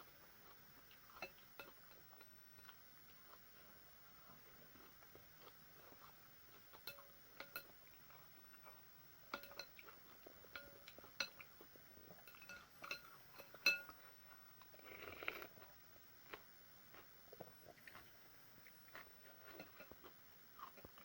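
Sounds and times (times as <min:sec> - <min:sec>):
utensils clinking against bowl: 0:01.1 - 0:02.2, 0:06.7 - 0:07.9, 0:09.3 - 0:14.0.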